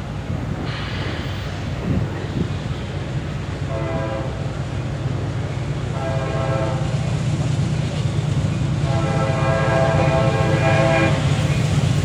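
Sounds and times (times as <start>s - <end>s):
train rumbling: 0.0s - 12.0s
locomotive horn blasts: 3.7s - 4.4s, 5.9s - 6.9s, 8.8s - 11.4s.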